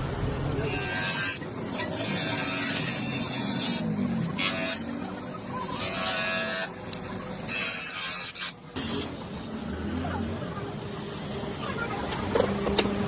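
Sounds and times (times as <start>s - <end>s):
low rumble: 0.0s - 0.7s.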